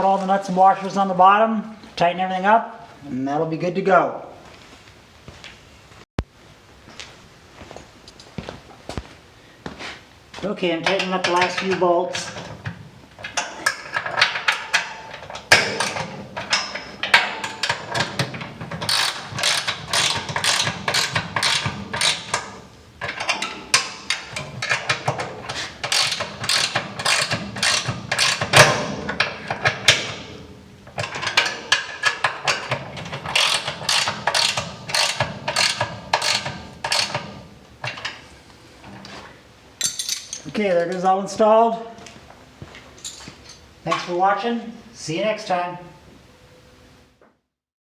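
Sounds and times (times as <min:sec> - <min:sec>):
ratchet wrench clicking: 0:18.9 - 0:22.4, 0:25.9 - 0:28.6, 0:33.3 - 0:37.2.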